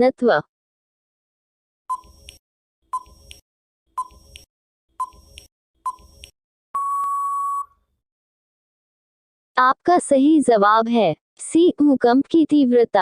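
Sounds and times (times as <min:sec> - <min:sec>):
countdown timer beeps: 0:04.0 - 0:04.4, 0:05.0 - 0:07.7
long steady beep: 0:06.8 - 0:07.8.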